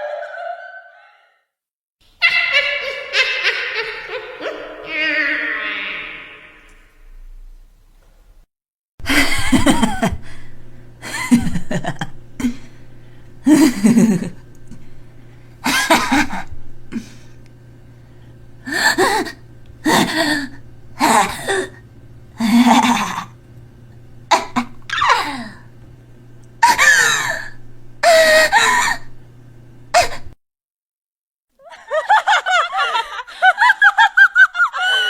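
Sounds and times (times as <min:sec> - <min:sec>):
woman laughing evilly: 0:00.0 - 0:01.3, 0:02.2 - 0:06.7, 0:09.0 - 0:10.4, 0:11.0 - 0:12.7, 0:13.4 - 0:14.4, 0:15.6 - 0:16.5, 0:18.7 - 0:21.8, 0:22.4 - 0:23.3, 0:24.3 - 0:25.6, 0:26.6 - 0:29.1, 0:31.6 - 0:35.0.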